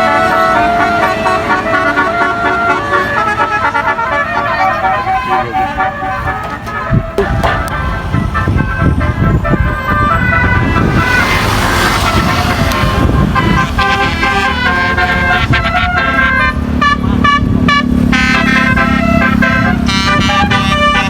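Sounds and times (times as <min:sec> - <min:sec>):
bus engine running: 0:00.0 - 0:21.0
bus horn playing musical notes: 0:00.0 - 0:21.0
noisy rush: 0:03.1 - 0:19.8.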